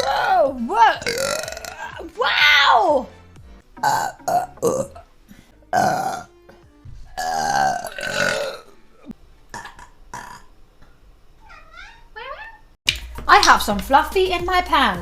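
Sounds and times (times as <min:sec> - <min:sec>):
woman burping: 0:00.9 - 0:02.0, 0:03.8 - 0:05.1, 0:05.7 - 0:06.6, 0:07.2 - 0:10.5.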